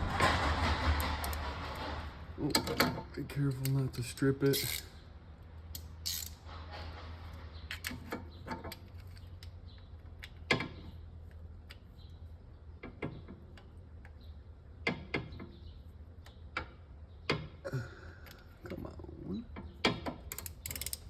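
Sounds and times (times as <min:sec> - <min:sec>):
ratchet clicks and knocks: 0:00.0 - 0:05.0, 0:05.7 - 0:06.5, 0:19.6 - 0:21.0.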